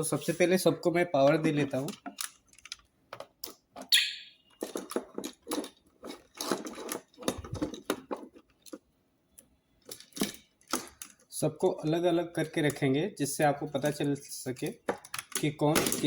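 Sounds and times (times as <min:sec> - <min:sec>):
plastic clicks and knocks: 0:01.3 - 0:03.9, 0:04.5 - 0:08.9, 0:13.7 - 0:16.0.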